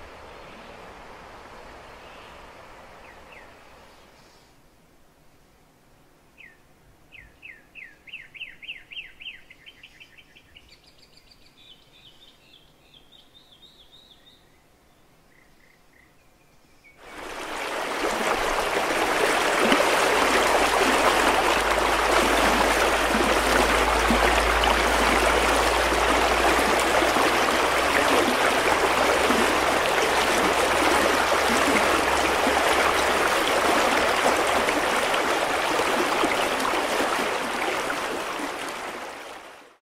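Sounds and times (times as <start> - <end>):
rushing water: 17.0 - 39.8.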